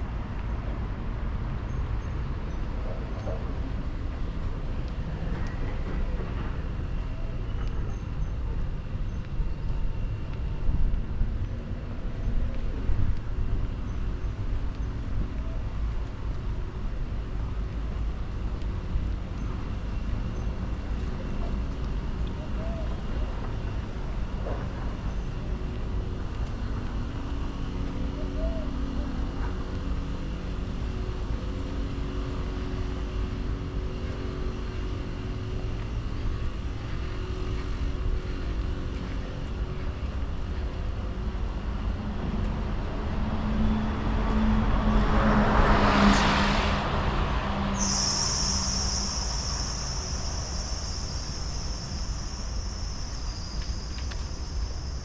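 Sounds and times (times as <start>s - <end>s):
traffic rumble: 0.0s - 55.0s
high-pitched whine: 1.7s - 55.0s
car driving past: 43.9s - 52.4s.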